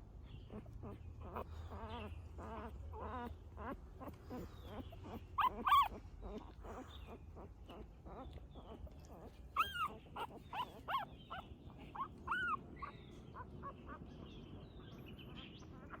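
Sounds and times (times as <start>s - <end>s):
newborn puppies whimpering: 0.4s - 14.0s.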